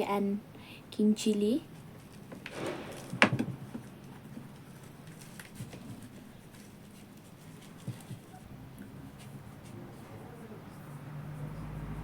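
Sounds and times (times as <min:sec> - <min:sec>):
faint clicks and taps: 0:03.4 - 0:09.8.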